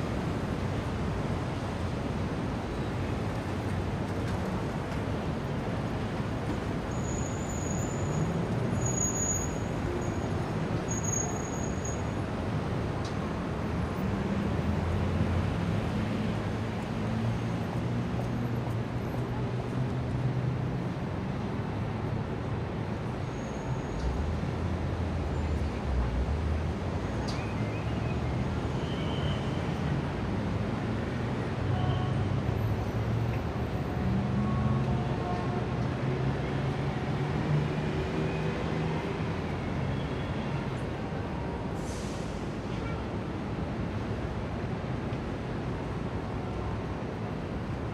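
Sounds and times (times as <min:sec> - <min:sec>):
road noise: 0:00.0 - 0:47.9
street traffic engines passing: 0:00.0 - 0:47.9
vehicle engines passing: 0:29.6 - 0:42.6.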